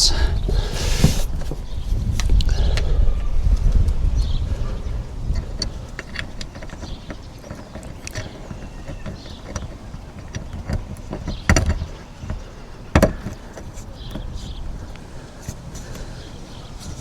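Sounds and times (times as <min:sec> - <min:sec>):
light clicks and handling noise: 0:05.3 - 0:17.0.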